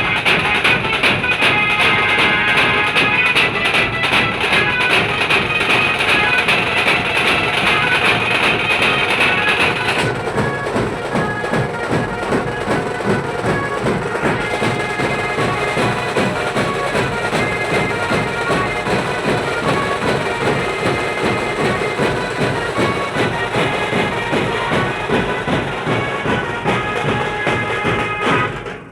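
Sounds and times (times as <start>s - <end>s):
reedy keyboard melody: 0.0s - 28.0s
fast steady drum beat: 0.0s - 28.9s.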